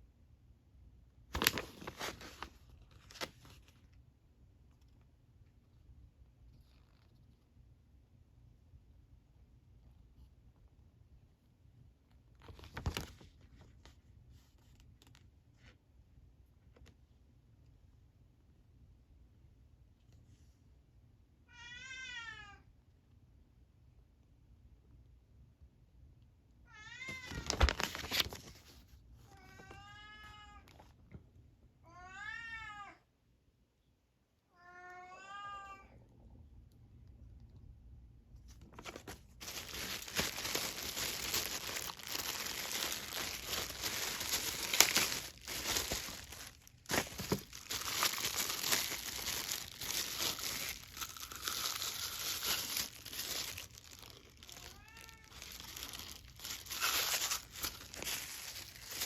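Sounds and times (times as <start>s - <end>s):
plastic packaging crinkling: 1.3s - 3.8s, 12.4s - 13.4s, 27.1s - 28.6s, 38.6s - 59.0s
cat meowing: 21.5s - 22.7s, 26.7s - 27.5s, 31.8s - 33.0s, 34.5s - 36.0s, 54.5s - 55.5s.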